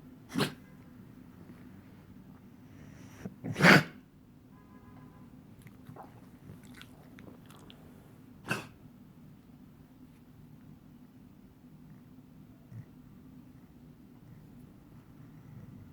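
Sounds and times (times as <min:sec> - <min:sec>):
pet coughing: 0:00.3 - 0:00.7, 0:02.9 - 0:04.0, 0:08.4 - 0:08.8.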